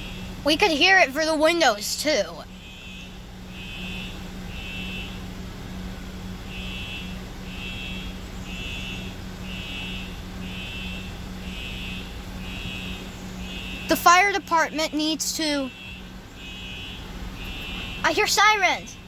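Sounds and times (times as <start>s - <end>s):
fire alarm beeping: 6.5s - 14.0s, 14.7s - 18.8s.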